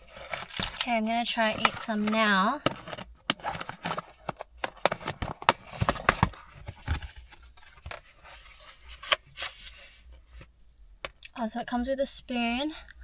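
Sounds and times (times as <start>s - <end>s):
food package rustling: 0.0s - 9.6s.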